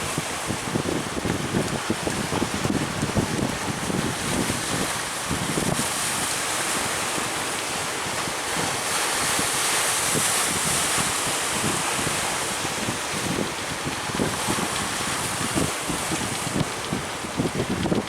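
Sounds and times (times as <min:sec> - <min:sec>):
sea surf rushing: 0:00.0 - 0:18.0
wind buffeting microphone: 0:00.0 - 0:18.0.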